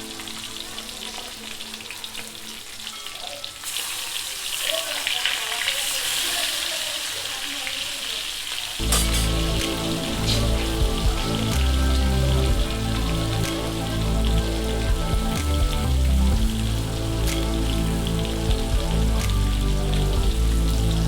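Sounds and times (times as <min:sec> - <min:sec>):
fish sizzling in hot oil: 0:00.0 - 0:21.0
loud music with low beat: 0:08.8 - 0:21.0.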